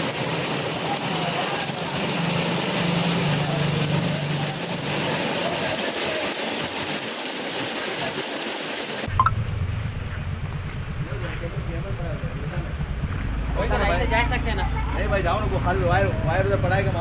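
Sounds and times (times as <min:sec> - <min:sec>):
heavy rain and wind hiss: 0:00.0 - 0:09.7
low hum: 0:09.1 - 0:15.7.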